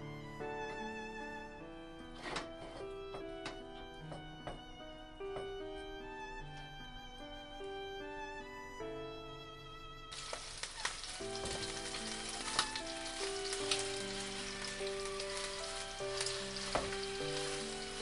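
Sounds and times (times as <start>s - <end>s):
soft background music: 0.0s - 18.0s
meat sizzling in a pan: 10.1s - 18.0s.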